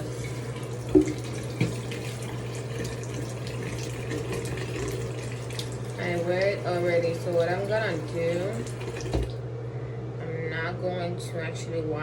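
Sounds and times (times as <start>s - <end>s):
water running from a tap: 0.0s - 9.4s.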